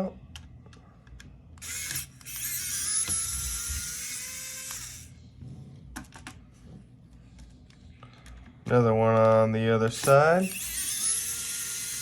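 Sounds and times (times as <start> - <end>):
electric screwdriver motor whirring: 1.6 - 5.1, 10.0 - 12.0.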